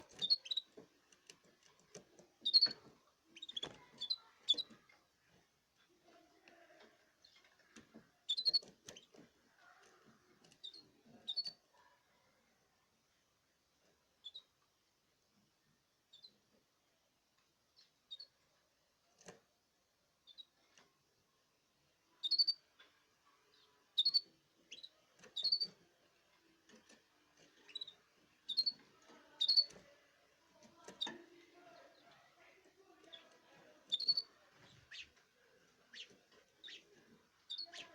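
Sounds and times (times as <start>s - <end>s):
light clicks and rustling: 0.0s - 11.6s, 24.2s - 31.4s
canaries chirping: 0.0s - 11.8s, 13.8s - 14.8s, 15.5s - 16.7s, 17.6s - 18.5s, 20.1s - 21.0s, 21.8s - 37.9s.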